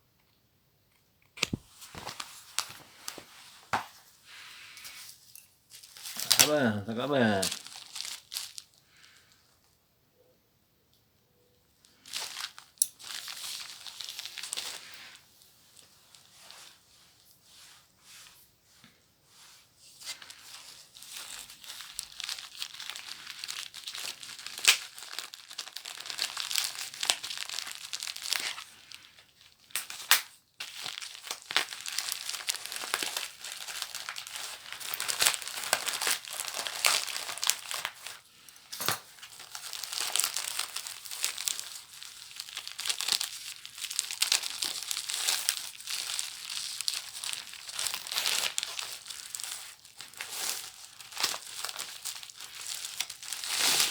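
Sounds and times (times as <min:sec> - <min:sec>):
paper packaging crumpled and torn: 0:05.8 - 0:09.3, 0:11.9 - 0:15.2, 0:20.0 - 0:53.9.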